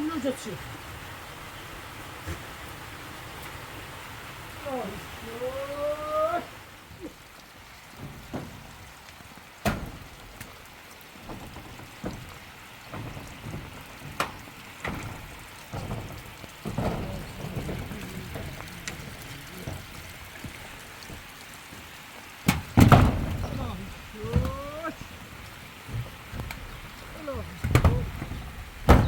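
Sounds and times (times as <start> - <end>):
steady rain falling: 0.0 - 29.0
sharp knocks and taps: 22.4 - 25.2.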